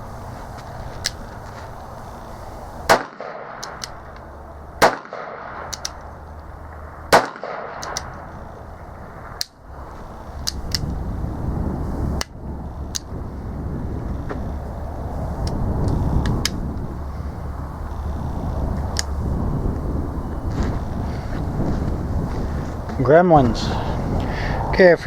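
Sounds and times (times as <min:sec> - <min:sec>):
low rumbling noise: 0:00.0 - 0:25.0
revolver shots: 0:07.1 - 0:08.3
light clicks: 0:10.4 - 0:11.0.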